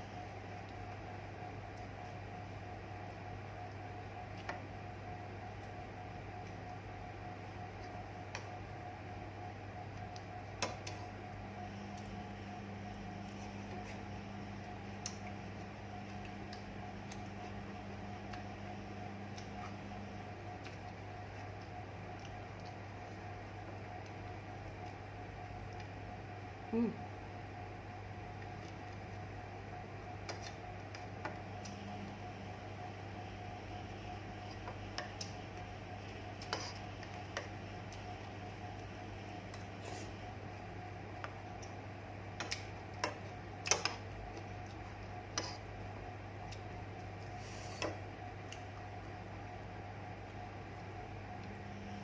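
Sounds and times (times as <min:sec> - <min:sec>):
low electrical hum: 0:00.0 - 0:52.0
eating clicks and smacks: 0:41.2 - 0:44.8.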